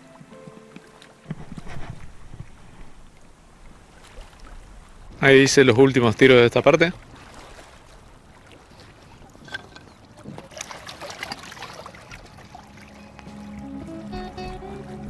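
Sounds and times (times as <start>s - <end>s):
music: 0.0s - 1.9s, 12.4s - 15.0s
light wind: 0.0s - 13.9s
water lapping at shore: 0.0s - 15.0s
handling clicks and rustles: 0.2s - 3.3s, 9.3s - 11.4s.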